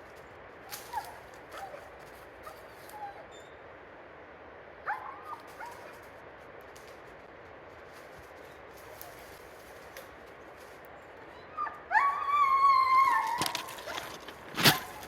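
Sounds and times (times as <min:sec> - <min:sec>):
background hiss: 0:00.0 - 0:15.0
dog whining and yipping: 0:00.8 - 0:03.6, 0:11.2 - 0:15.0.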